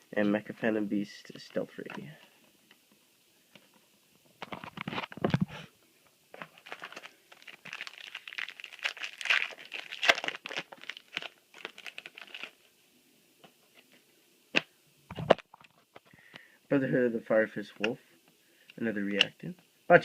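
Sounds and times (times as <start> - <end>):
cards rustling: 6.4 - 12.6
foil pack crinkling: 6.4 - 12.7.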